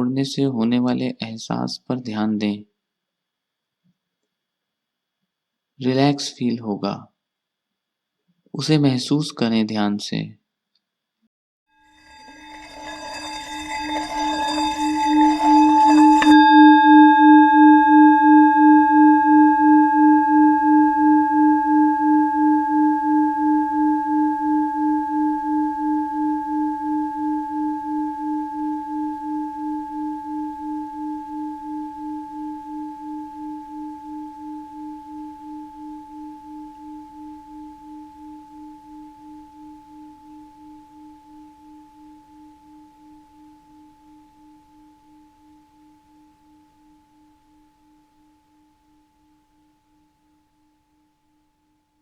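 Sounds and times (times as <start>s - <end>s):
scraping on singing bowl: 11.8s - 48.8s
singing bowl ringing: 11.8s - 50.8s.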